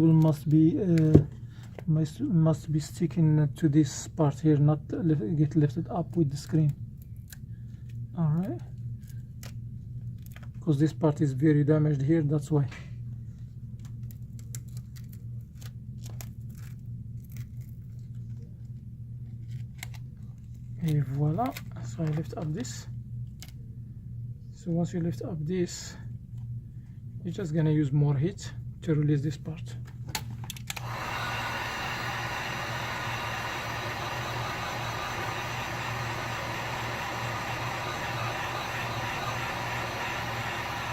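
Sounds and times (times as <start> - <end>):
steady low hum: 0.0 - 40.9
heat gun blowing: 30.8 - 40.9.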